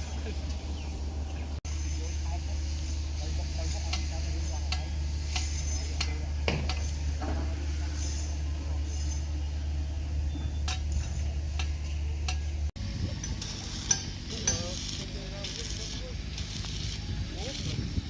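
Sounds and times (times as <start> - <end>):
bursts of hiss: 12.8 - 18.0.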